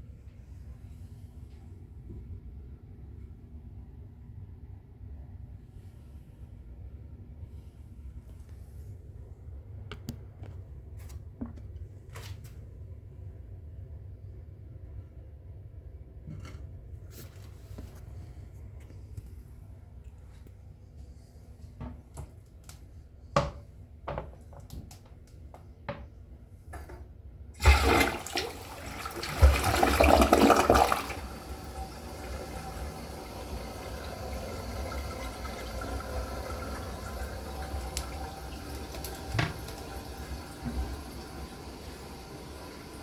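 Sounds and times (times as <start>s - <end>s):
toilet flushing water rush: 27.6s - 43.0s
toilet tank refilling hiss: 27.6s - 43.0s.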